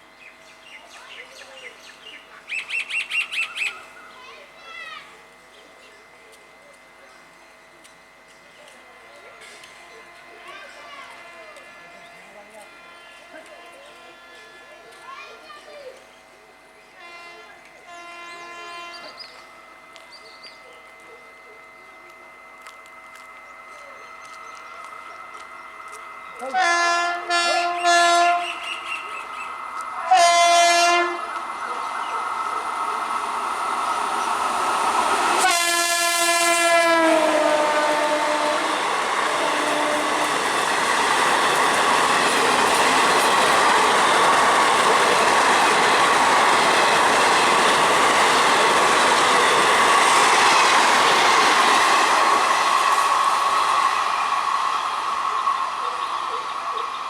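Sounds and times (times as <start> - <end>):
train coaches passing: 0.0 - 57.0
train horn blasts: 9.4 - 15.1, 16.9 - 19.2, 26.4 - 29.3, 30.0 - 31.4, 35.2 - 40.7.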